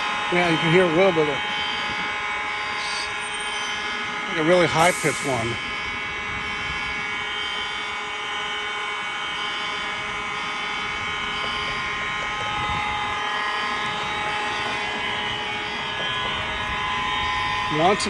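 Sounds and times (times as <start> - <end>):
faint high fire alarm: 0.0 - 18.0
mechanical drone: 0.0 - 18.0.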